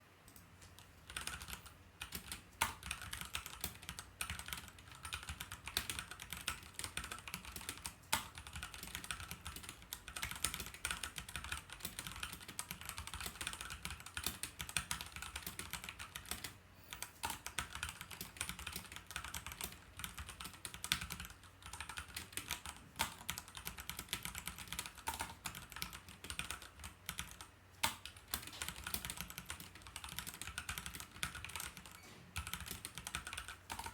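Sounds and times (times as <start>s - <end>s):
typing on mechanical keyboard: 0.3s - 33.9s.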